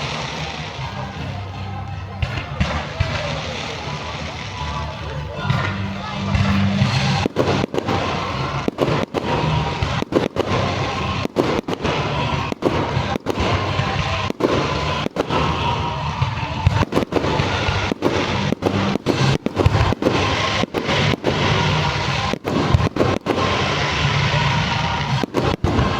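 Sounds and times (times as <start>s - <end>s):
fireworks bangs and crackling: 0.0s - 25.9s.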